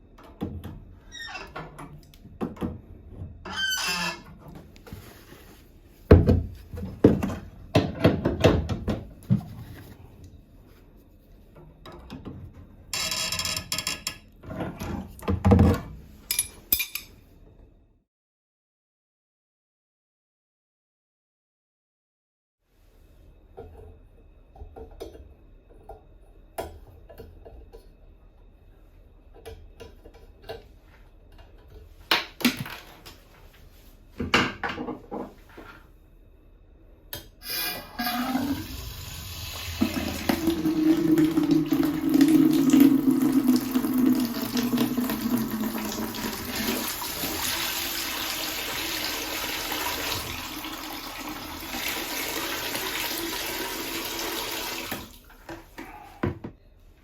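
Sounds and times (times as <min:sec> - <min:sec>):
faucet water running: 0:37.8 - 0:55.3.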